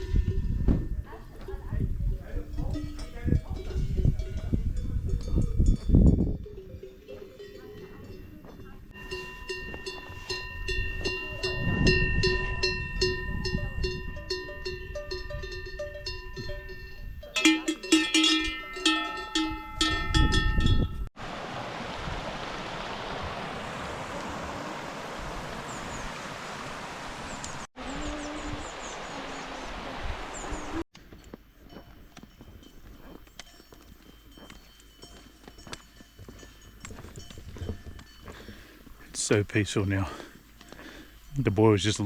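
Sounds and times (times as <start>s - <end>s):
cow bells clanking: 0.0s - 21.1s, 31.0s - 42.0s.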